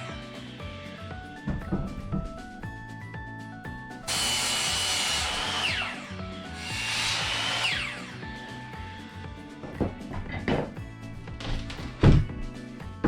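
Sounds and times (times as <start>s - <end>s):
power tool cutting wood: 4.0s - 8.7s
power tool whining: 4.0s - 9.0s.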